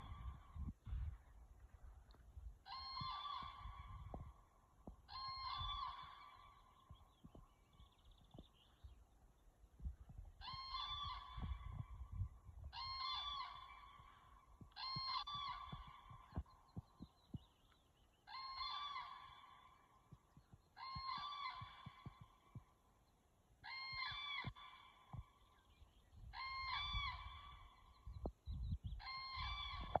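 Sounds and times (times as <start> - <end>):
crane bugling calls: 2.6 - 4.2, 12.8 - 16.5, 26.3 - 28.0.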